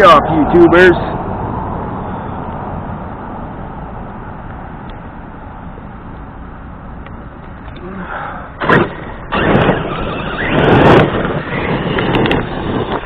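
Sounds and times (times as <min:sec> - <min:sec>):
rc truck driving over rough ground: 0:07.0 - 0:13.0.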